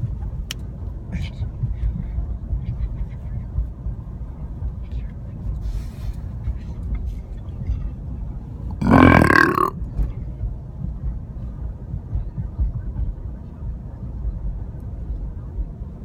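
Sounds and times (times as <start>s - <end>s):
person burping: 8.8s - 9.8s.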